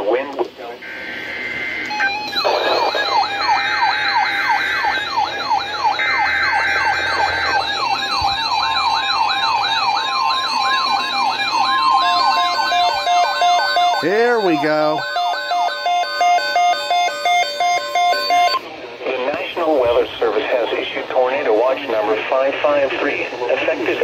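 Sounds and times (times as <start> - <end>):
electronic sirens yelping: 0.8 - 18.6
multi-tone beep: 1.9 - 18.6.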